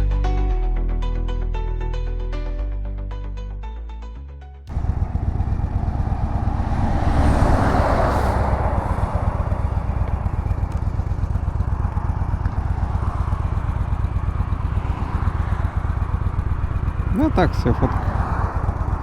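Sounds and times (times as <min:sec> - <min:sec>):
motorcycle engine running: 0:04.7 - 0:19.0
wind and road rush: 0:04.7 - 0:19.0.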